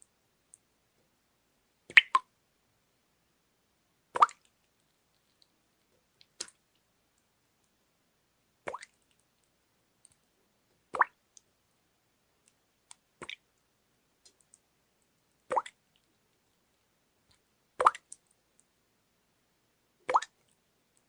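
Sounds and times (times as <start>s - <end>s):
water dripping: 1.9s - 2.3s, 4.2s - 7.3s, 8.6s - 10.2s, 10.8s - 11.5s, 12.4s - 13.6s, 14.2s - 16.3s, 17.2s - 18.7s, 20.0s - 21.0s.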